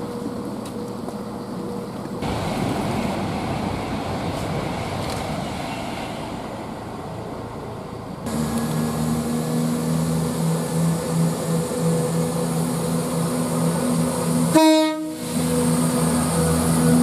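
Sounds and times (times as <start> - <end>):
train running: 0.0 - 17.0
train horn blast: 14.3 - 15.9.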